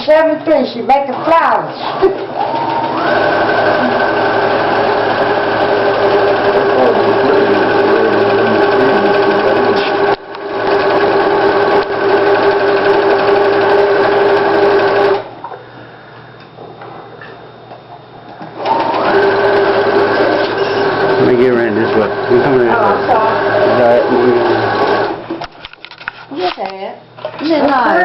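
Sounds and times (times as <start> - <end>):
sewing machine running: 1.1 - 15.3, 18.6 - 25.2.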